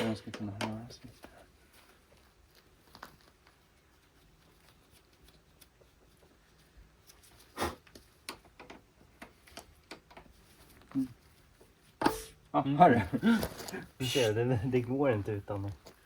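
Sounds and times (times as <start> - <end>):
light clicks and taps of tools: 0.0 - 1.4, 7.0 - 10.9.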